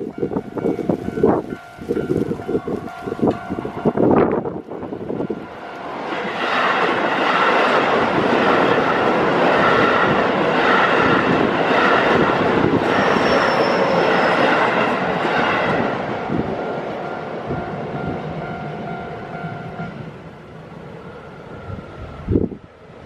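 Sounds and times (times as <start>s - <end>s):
level crossing warning bell: 0.0s - 5.8s, 16.7s - 20.5s
electric train running: 0.0s - 23.0s
high squeal: 12.7s - 15.0s.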